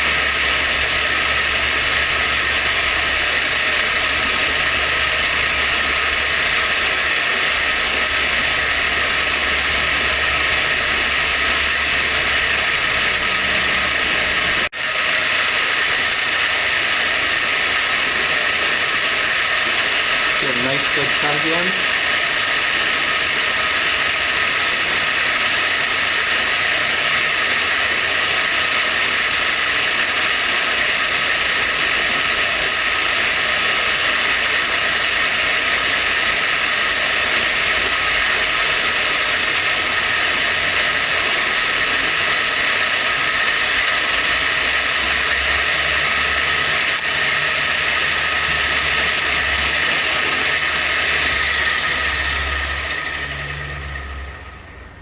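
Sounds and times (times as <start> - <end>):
milling machine spindle whine: 0.0 - 55.0.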